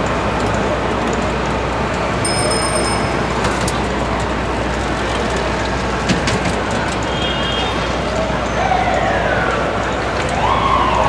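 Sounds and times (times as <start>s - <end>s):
heavy street traffic roar: 0.0s - 11.0s.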